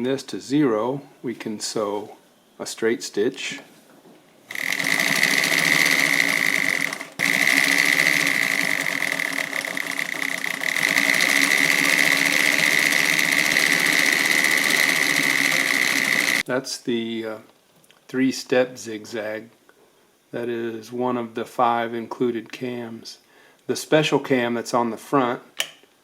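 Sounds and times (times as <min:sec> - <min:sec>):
sewing machine stitching: 0:04.5 - 0:16.4.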